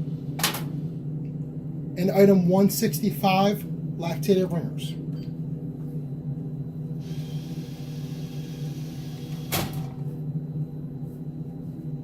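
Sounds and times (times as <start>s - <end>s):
low machine hum: 0.0s - 12.0s
vending machine coil motor: 7.0s - 10.1s.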